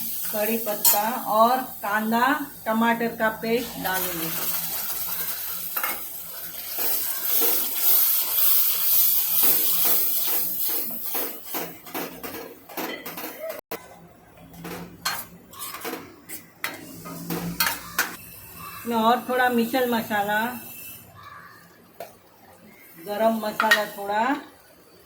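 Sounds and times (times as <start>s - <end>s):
paste sizzling in hot oil: 0.0s - 11.4s
metal spoon scraping a pan: 15.0s - 18.9s, 23.4s - 24.2s.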